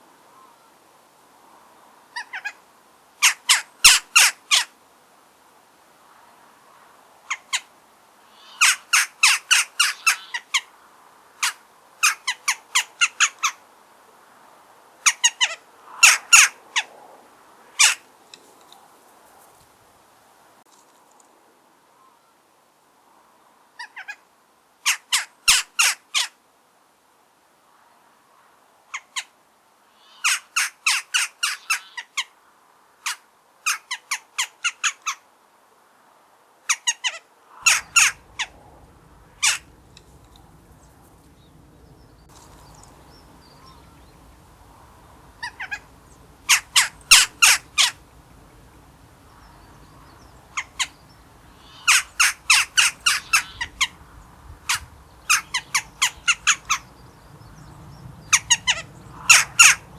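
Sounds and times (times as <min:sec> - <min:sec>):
jackdaws calling: 0:08.3 - 0:10.7, 0:11.4 - 0:13.6, 0:15.0 - 0:16.9, 0:17.6 - 0:18.6, 0:29.9 - 0:32.2, 0:36.7 - 0:59.9.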